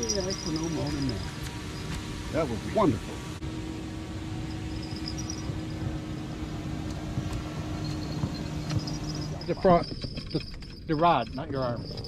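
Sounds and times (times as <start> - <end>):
boat motor humming: 0.0 - 12.0
noisy background: 0.0 - 12.0.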